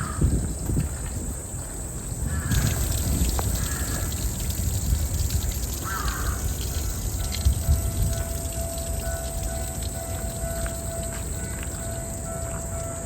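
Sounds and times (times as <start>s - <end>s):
crow cawing: 0.0s - 0.2s, 2.2s - 2.8s, 3.5s - 4.1s, 5.8s - 7.0s
wind on microphone: 0.0s - 9.6s.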